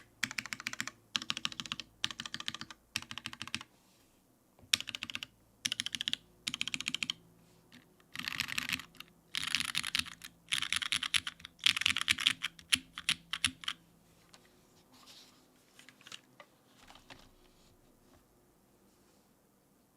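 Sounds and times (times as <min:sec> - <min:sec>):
mechanical keyboard typing: 0:00.0 - 0:03.7, 0:04.7 - 0:07.2, 0:07.8 - 0:13.8.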